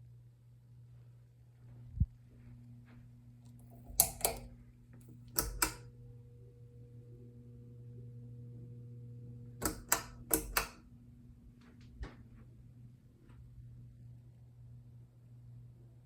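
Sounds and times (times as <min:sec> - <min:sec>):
ceiling fan motor humming: 0:00.0 - 0:16.0
sharp clicks: 0:03.5 - 0:05.9, 0:09.6 - 0:10.8.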